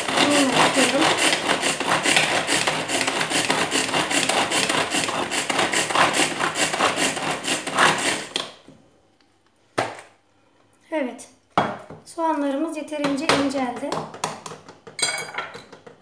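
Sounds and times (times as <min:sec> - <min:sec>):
hand food chopper whirring: 0:00.0 - 0:08.6.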